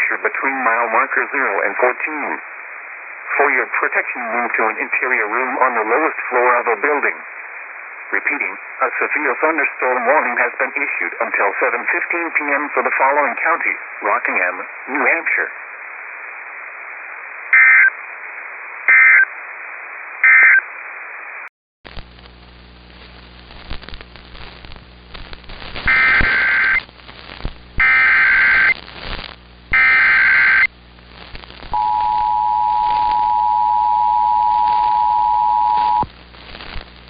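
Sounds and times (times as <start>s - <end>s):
steady hum and hiss: 0.0s - 20.2s, 20.8s - 37.0s
digital data bursts: 25.8s - 26.8s, 27.8s - 28.8s, 29.7s - 30.7s
two-tone attention signal: 31.8s - 36.0s.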